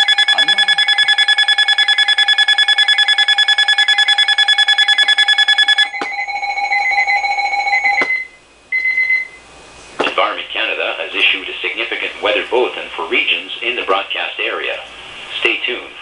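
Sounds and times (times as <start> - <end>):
fast electronic beeping: 0.0 - 8.3
steady alert tone: 0.0 - 8.4.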